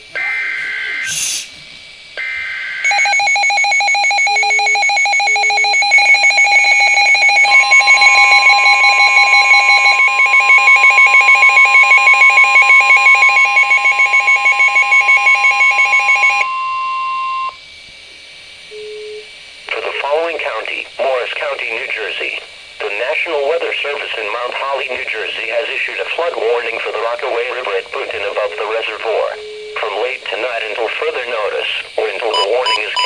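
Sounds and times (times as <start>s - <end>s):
screechy digital header bursts: 0.1s - 1.5s
pulsing two-tone alarm: 2.2s - 17.6s, 31.0s - 33.0s
steady single warning tone: 2.2s - 17.6s, 18.7s - 21.4s, 26.1s - 33.0s.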